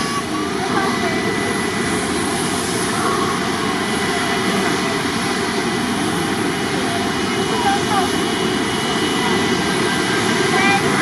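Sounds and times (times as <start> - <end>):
jet engines roaring: 0.0 - 11.0.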